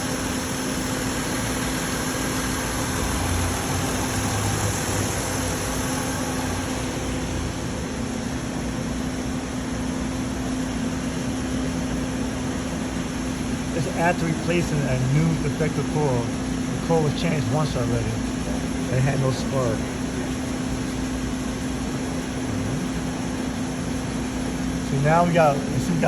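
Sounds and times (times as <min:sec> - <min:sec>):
car engine idling: 0:00.0 - 0:07.9, 0:22.1 - 0:23.8.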